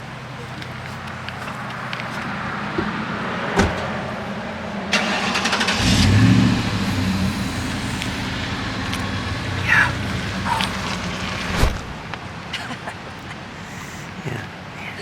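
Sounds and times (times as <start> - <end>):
car engine humming: 0.0 - 14.5.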